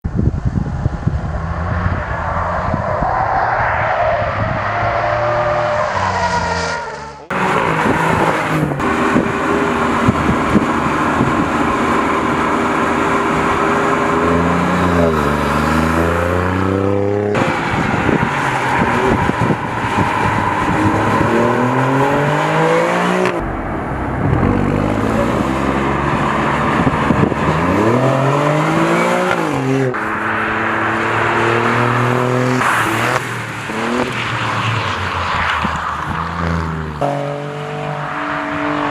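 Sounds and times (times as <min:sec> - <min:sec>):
car engine revving at high revs: 0:07.3 - 0:23.5, 0:24.1 - 0:34.8.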